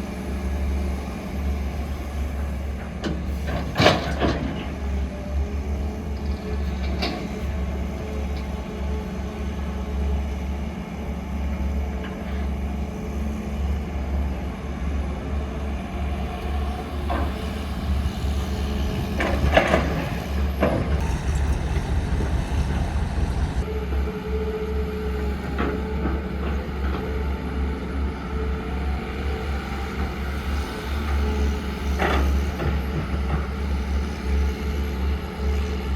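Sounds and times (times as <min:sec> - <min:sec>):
diesel engine rumbling: 0:16.3 - 0:23.9
harsh metallic sounds: 0:21.0 - 0:23.7.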